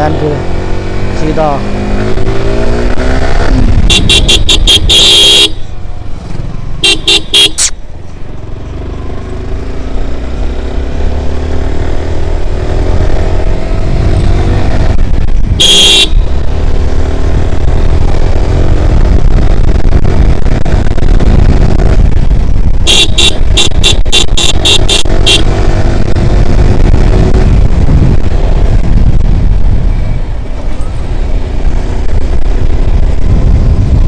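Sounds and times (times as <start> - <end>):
motorcycle engine running: 0.0 - 34.0
vehicle horn short toots: 3.8 - 5.6, 6.8 - 7.7, 15.6 - 16.2, 22.9 - 25.5.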